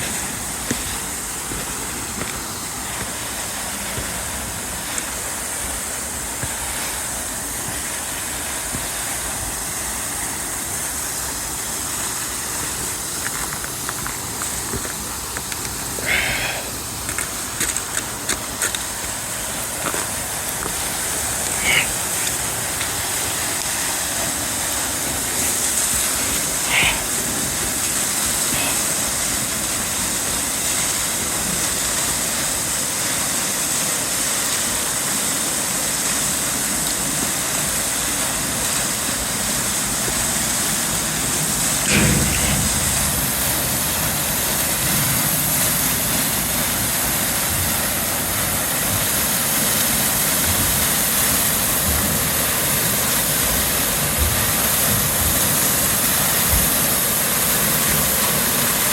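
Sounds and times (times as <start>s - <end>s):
waterfall roaring: 0.0s - 58.9s
low thump: 41.9s - 43.4s.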